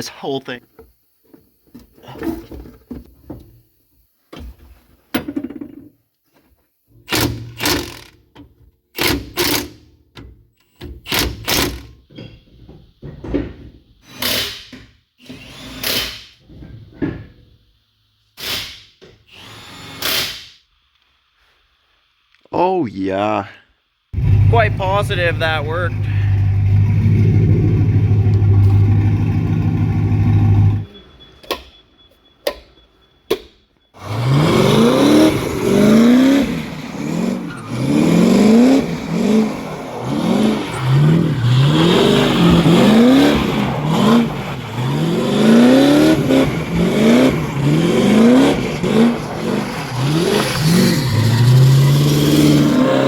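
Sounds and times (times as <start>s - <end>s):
engine revving: 24.2s - 30.9s, 34.0s - 53.0s.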